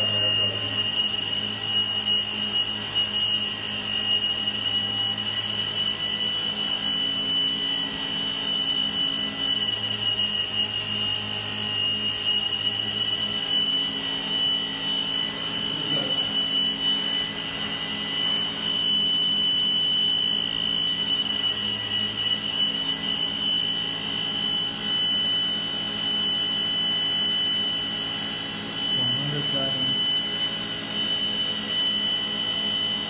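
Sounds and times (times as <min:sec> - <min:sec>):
circular saw motor whining: 0:00.0 - 0:33.0.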